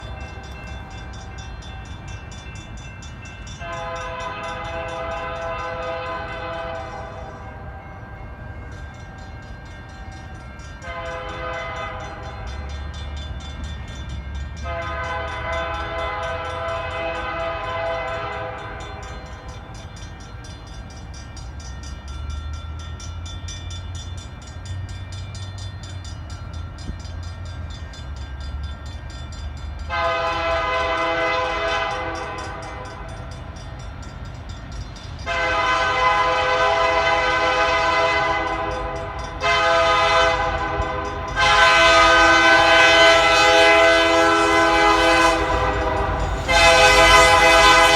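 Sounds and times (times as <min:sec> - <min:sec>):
locomotive horn blasts: 0:03.6 - 0:07.5, 0:10.8 - 0:12.6, 0:14.6 - 0:19.2, 0:29.9 - 0:33.1, 0:35.3 - 0:47.9.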